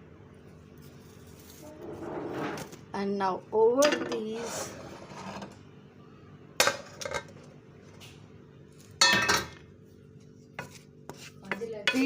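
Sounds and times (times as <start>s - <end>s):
metal spoon clinking on pan: 11.5s - 12.0s.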